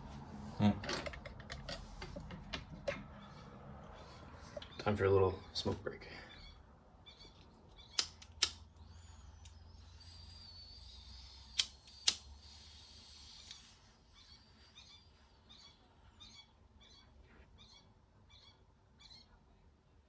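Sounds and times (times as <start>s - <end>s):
lighter clicking: 11.0s - 13.7s.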